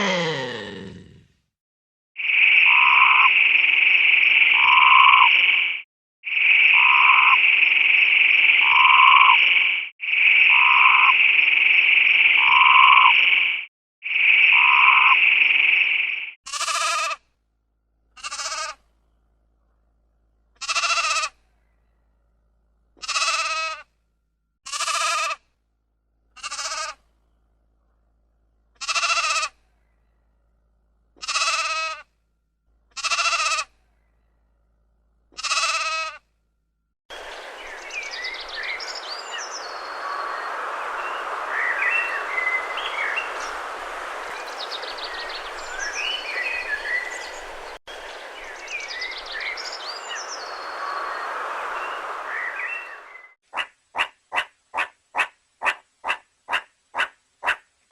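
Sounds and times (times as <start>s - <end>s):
sheep bleating: 16.5s - 17.2s, 18.2s - 18.8s, 20.6s - 21.3s, 23.0s - 23.8s, 24.7s - 25.4s, 26.4s - 27.0s, 28.8s - 29.5s, 31.2s - 32.0s, 33.0s - 33.7s, 35.4s - 36.2s
birds chirping: 37.1s - 53.4s
outdoor hiss: 37.1s - 57.9s.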